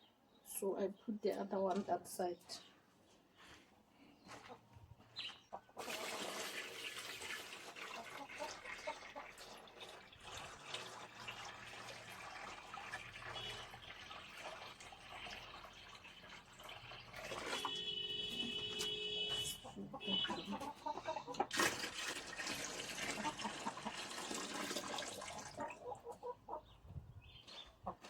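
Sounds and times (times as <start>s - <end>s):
water running into container: 5.8s - 19.2s, 21.3s - 25.9s.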